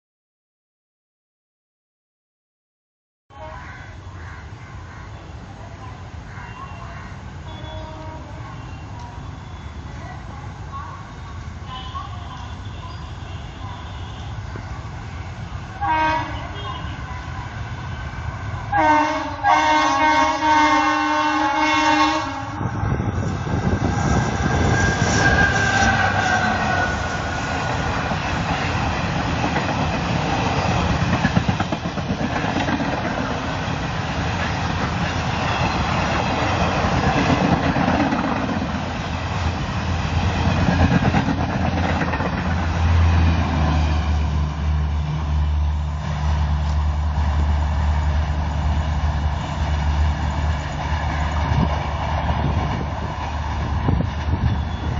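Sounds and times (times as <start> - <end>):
train horn: 3.3 - 3.9, 7.5 - 8.8, 11.7 - 14.4, 15.7 - 17.2, 18.7 - 22.7, 24.6 - 27.4
train wheels clattering on rails: 23.2 - 43.5.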